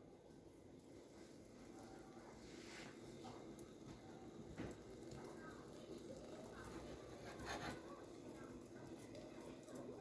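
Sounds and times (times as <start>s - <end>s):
faint soft rustle: 2.3s - 3.2s.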